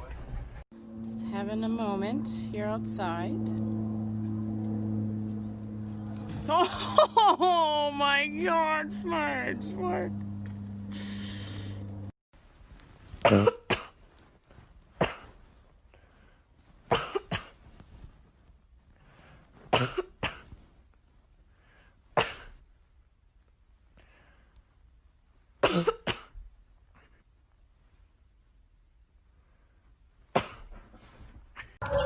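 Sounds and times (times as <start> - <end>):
person coughing: 13.2 - 14.0, 15.0 - 15.3, 16.9 - 17.6, 19.8 - 20.4, 22.2 - 22.5, 25.6 - 26.4, 30.4 - 30.7.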